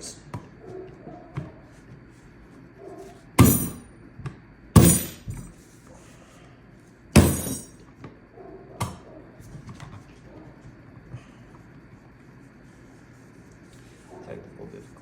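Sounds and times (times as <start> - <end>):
hand striking metal: 3.4 - 3.8, 4.8 - 5.4, 7.2 - 7.7.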